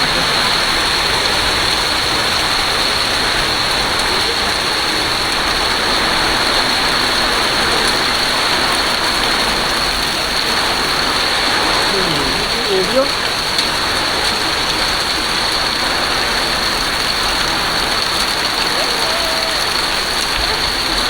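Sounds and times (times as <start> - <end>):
heavy rain pouring: 0.0 - 21.0.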